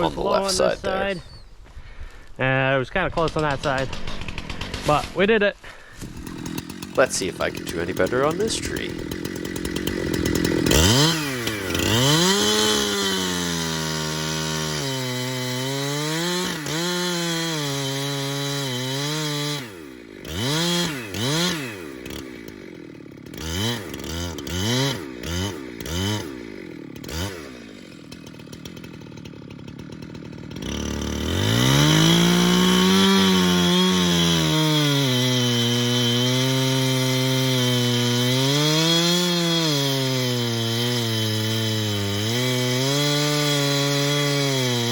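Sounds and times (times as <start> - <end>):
chainsaw cutting tree trunk: 0.0 - 1.4, 3.1 - 44.9.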